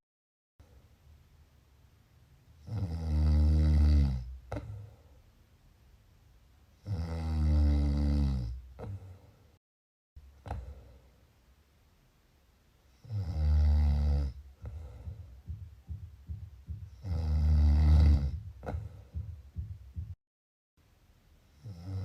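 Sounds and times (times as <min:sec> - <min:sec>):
loud rattly snoring: 0:02.6 - 0:04.3, 0:06.8 - 0:08.6, 0:13.0 - 0:14.4, 0:17.0 - 0:18.4, 0:21.6 - 0:22.0.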